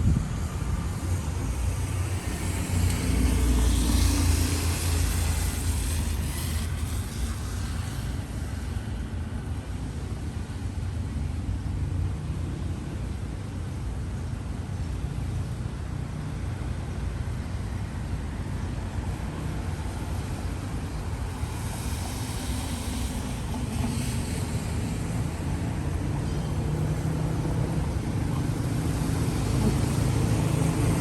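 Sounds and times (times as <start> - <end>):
city street traffic: 0.0 - 31.0
vehicle passing hiss: 0.0 - 31.0.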